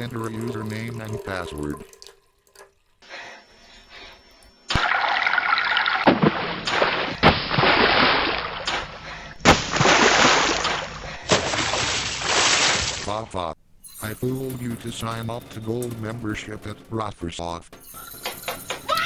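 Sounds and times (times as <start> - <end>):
running and splashing water: 0.0 - 3.0, 4.7 - 13.2.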